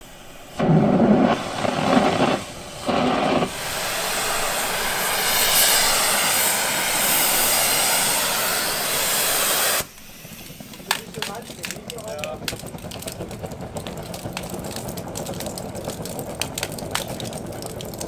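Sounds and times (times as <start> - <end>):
thermite welding hiss: 0.0 - 11.4
rumbling bursts: 0.1 - 18.0.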